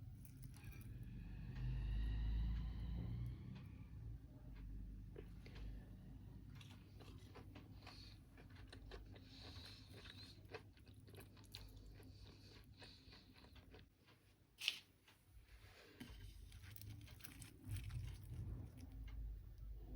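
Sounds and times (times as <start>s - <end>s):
chewing crispy fried food: 0.0s - 1.8s, 5.1s - 5.8s, 6.5s - 14.9s, 15.8s - 19.3s.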